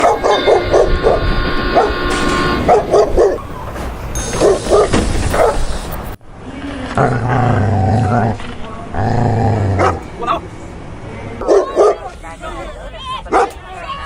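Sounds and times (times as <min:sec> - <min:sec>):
dog barking: 0:00.0 - 0:03.6, 0:04.4 - 0:05.7, 0:11.4 - 0:12.1, 0:13.3 - 0:13.6.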